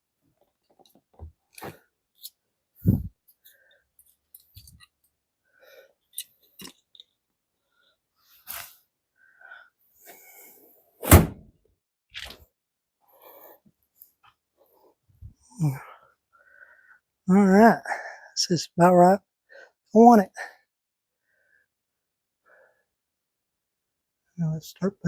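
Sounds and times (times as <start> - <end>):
sharp knock: 11.0 - 11.4
low thump: 11.0 - 11.5.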